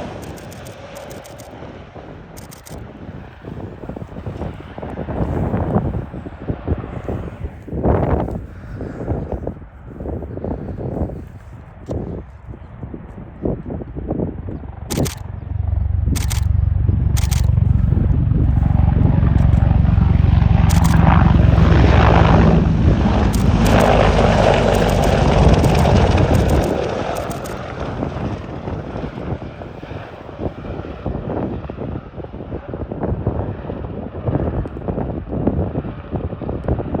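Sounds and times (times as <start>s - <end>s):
rapid clicks: 0.0s - 1.5s, 14.9s - 15.3s, 16.2s - 16.5s, 17.2s - 17.6s, 20.6s - 21.8s, 23.2s - 27.8s
helicopter rotor and turbine: 0.0s - 37.0s.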